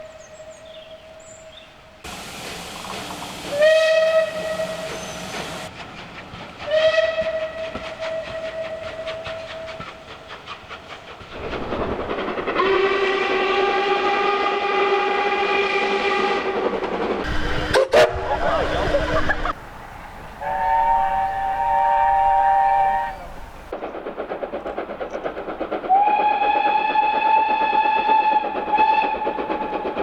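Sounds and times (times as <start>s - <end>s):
steam locomotive whistle: 2.1s - 5.7s, 6.6s - 9.9s, 12.6s - 16.6s, 17.2s - 23.7s, 25.9s - 30.0s
steam hissing: 2.1s - 14.3s, 15.8s - 30.0s.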